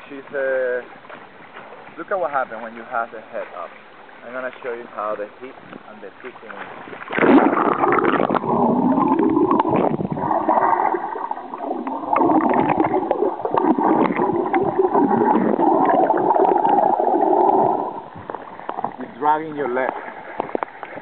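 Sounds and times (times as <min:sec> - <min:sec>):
muffled underwater water rushing: 0:00.0 - 0:21.0
small bubbling clicks: 0:07.0 - 0:19.0, 0:19.8 - 0:21.0.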